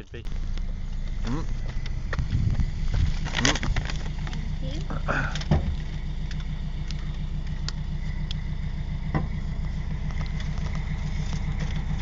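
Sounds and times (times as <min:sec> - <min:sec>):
diesel engine idling: 0:00.0 - 0:12.0.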